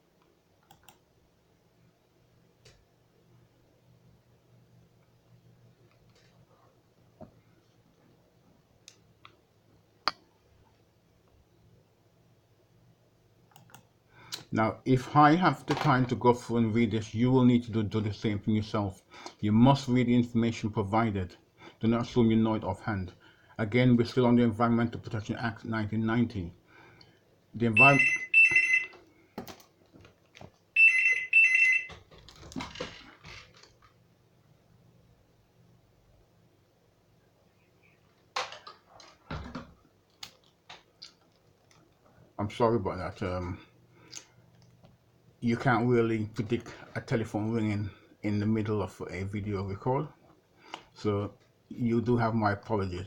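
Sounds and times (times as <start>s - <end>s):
sharp clicks: 13.5s - 14.4s
telephone ringing: 27.8s - 29.0s, 30.8s - 32.0s.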